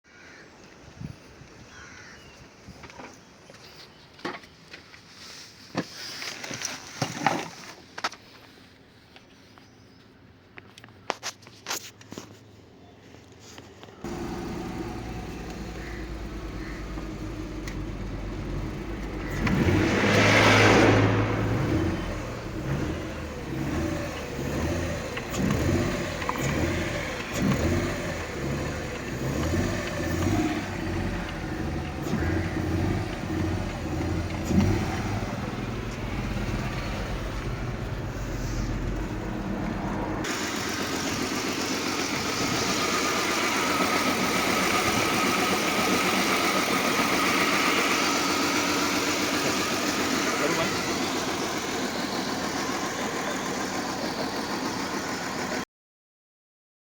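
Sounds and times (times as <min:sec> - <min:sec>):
car engine revving: 0:14.1 - 0:55.6.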